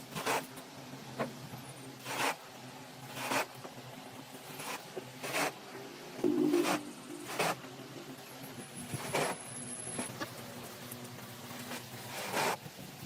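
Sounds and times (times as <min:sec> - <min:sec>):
hand tool scraping wood: 0:00.1 - 0:00.5, 0:02.0 - 0:02.4, 0:03.1 - 0:03.6, 0:04.6 - 0:05.6, 0:06.5 - 0:07.6, 0:08.9 - 0:09.4, 0:11.7 - 0:12.6.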